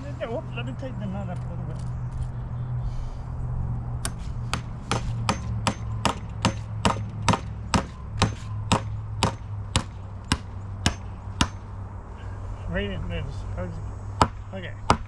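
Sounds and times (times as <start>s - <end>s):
steady low hum: 0.0s - 15.0s
hammer striking steel anchor: 4.0s - 11.8s, 14.2s - 15.0s.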